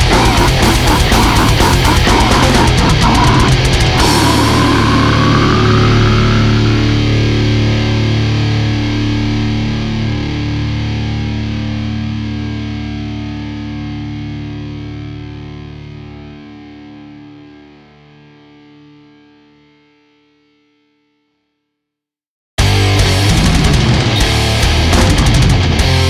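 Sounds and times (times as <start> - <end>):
guitar feedback tone: 0.0 - 11.0
heavy metal band playing: 0.0 - 11.0, 22.6 - 26.0
distorted electric guitar chord: 0.0 - 12.2.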